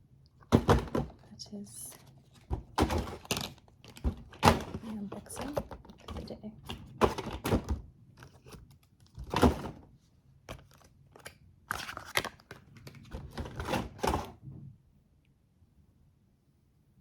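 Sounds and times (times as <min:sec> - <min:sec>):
products knocking and clicking: 0:02.5 - 0:07.8
packaging rustling: 0:10.5 - 0:14.3.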